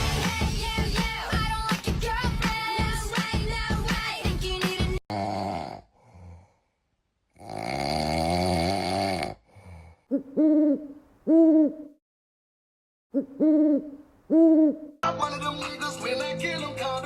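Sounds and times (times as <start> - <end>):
hooting calls: 10.1 - 12.0, 13.1 - 15.0.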